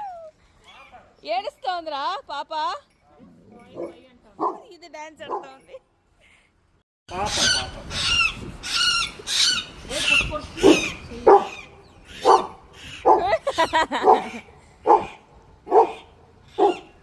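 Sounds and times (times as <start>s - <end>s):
dog barking: 3.8s - 4.7s, 10.6s - 11.6s, 12.2s - 13.3s, 14.0s - 17.0s
shrill high-pitched calls: 7.2s - 13.1s.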